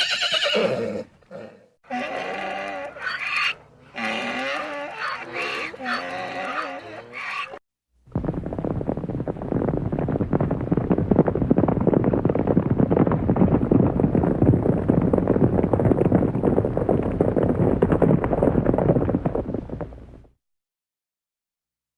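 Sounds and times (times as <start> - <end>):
horses galloping: 8.1 - 20.3.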